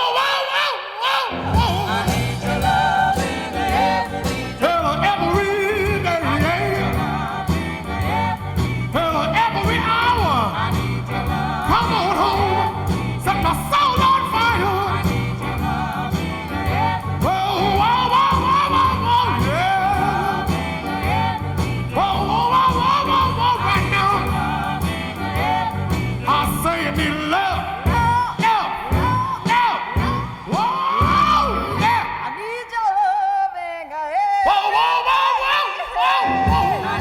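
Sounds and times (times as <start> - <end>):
r and b duet vocals over band: 0.0 - 37.0.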